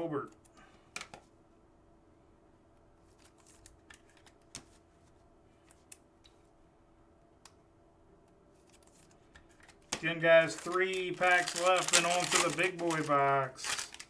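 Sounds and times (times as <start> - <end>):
trading cards and foil pack handled: 8.6 - 14.0.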